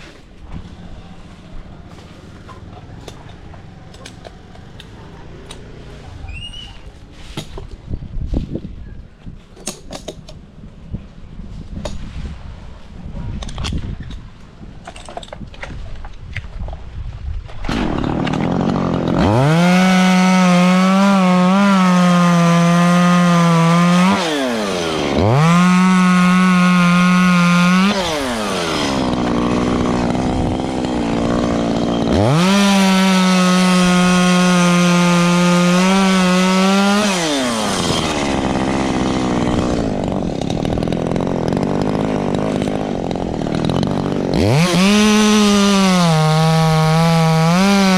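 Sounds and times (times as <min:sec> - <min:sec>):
chainsaw revving: 0:17.7 - 0:47.9.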